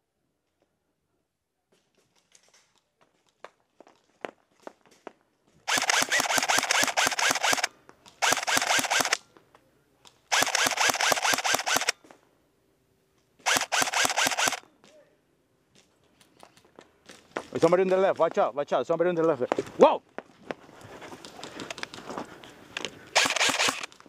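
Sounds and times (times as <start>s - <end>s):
airsoft gun automatic bursts: 5.7s - 9.2s, 10.3s - 12.0s, 13.4s - 14.6s, 23.2s - 24.0s.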